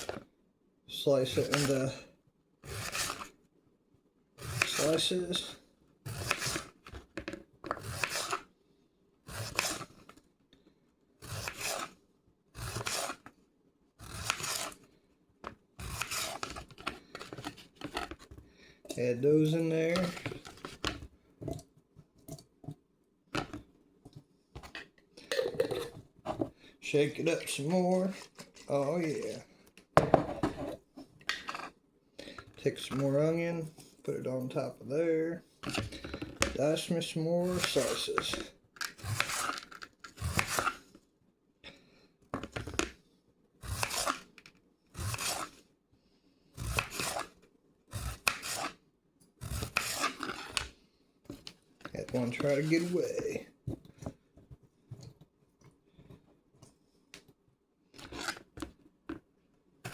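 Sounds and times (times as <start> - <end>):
knife slicing cucumber: 4.4 - 5.0, 6.1 - 6.8, 7.7 - 8.5, 9.3 - 10.0, 11.2 - 12.0, 12.6 - 13.2, 14.0 - 14.8, 15.8 - 16.8, 38.9 - 39.6, 40.2 - 40.8, 43.6 - 44.3, 45.0 - 45.6, 46.6 - 48.8, 49.4 - 50.7, 58.0 - 58.5.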